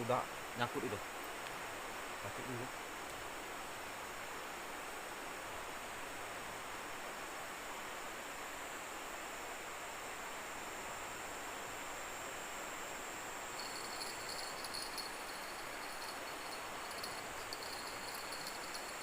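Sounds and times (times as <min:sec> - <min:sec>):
insects droning: 0:00.0 - 0:04.4, 0:10.0 - 0:19.0
river water rushing: 0:13.6 - 0:19.0.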